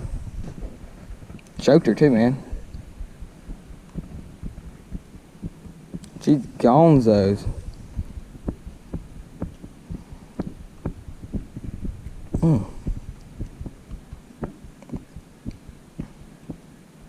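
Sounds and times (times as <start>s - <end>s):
person grunting: 12.4s - 13.0s.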